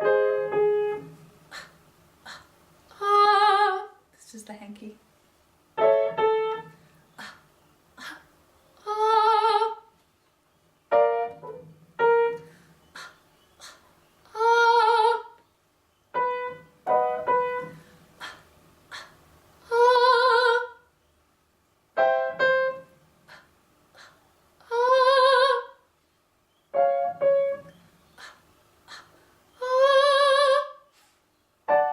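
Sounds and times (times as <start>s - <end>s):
piano chord: 0.0s - 1.2s, 10.9s - 12.5s, 16.2s - 17.8s, 26.8s - 27.7s, 31.7s - 31.9s.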